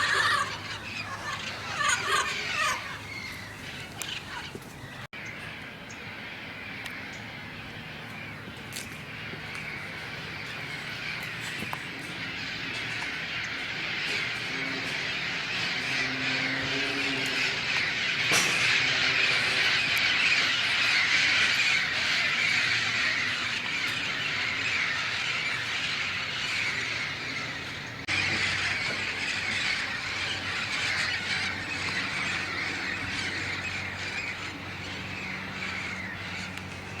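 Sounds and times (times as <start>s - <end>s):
parrots squawking: 0.0s - 4.9s.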